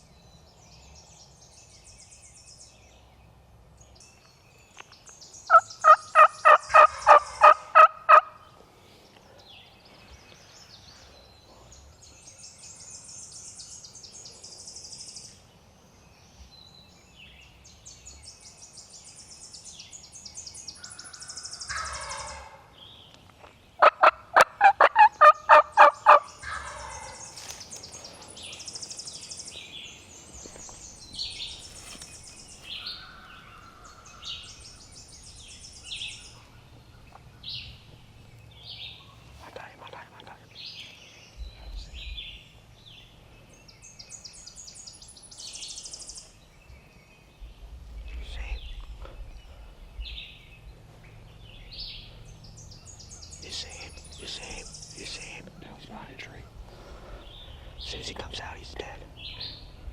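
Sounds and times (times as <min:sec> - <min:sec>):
songbirds trilling and chirping: 0:00.0 - 0:59.9
turkey gobbling: 0:05.5 - 0:08.4, 0:21.7 - 0:22.6, 0:23.8 - 0:27.2.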